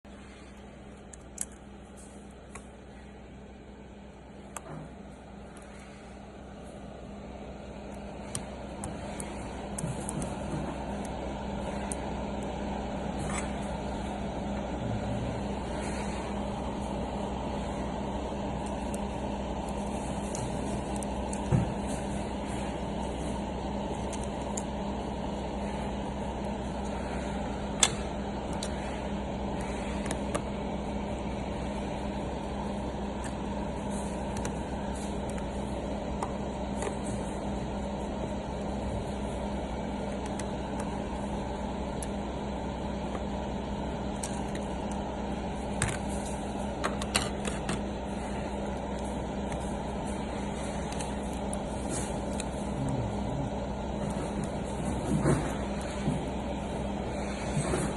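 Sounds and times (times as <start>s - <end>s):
low hum and hiss: 0.0s - 57.9s.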